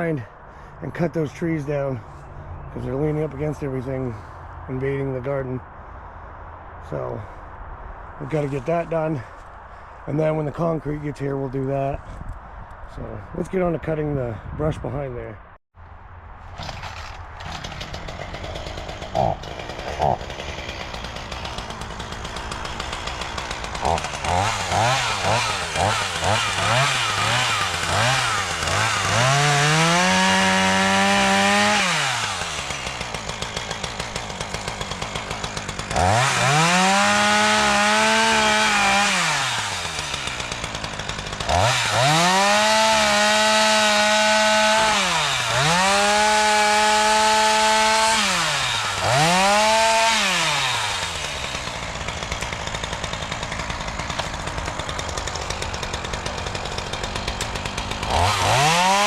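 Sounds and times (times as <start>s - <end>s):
chainsaw engine revving: 16.5s - 59.0s.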